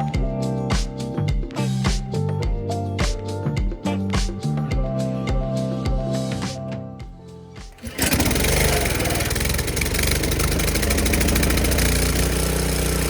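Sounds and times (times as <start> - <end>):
music: 0.0 - 13.0
pressure washer engine running: 7.8 - 13.0.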